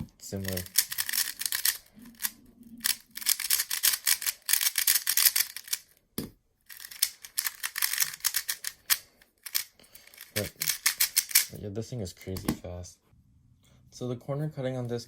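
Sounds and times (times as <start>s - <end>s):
puzzle cube turning clicks: 0.3s - 6.0s, 6.7s - 11.6s.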